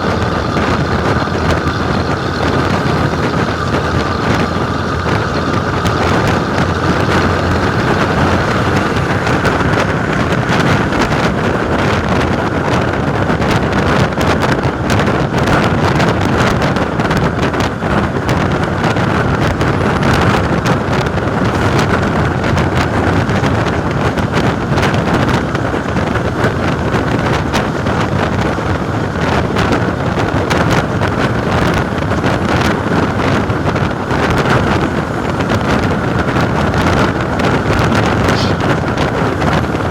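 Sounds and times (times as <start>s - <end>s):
bus diesel engine running: 0.0s - 39.9s
wind noise on microphone: 0.0s - 39.9s.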